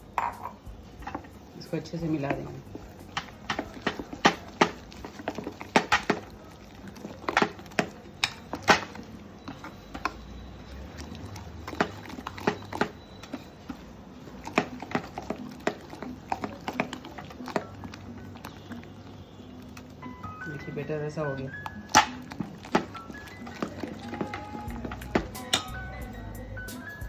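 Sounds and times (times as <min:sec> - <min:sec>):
thick batter being stirred: 0:00.0 - 0:27.0
spoon knocking against bowl: 0:00.1 - 0:01.3.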